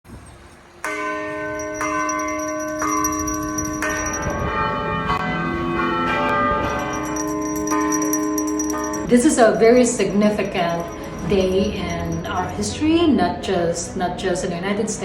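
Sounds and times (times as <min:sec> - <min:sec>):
lower-pitched bell: 0:01.2 - 0:04.8, 0:06.5 - 0:13.0
bell ringing: 0:01.4 - 0:04.6, 0:06.6 - 0:12.7.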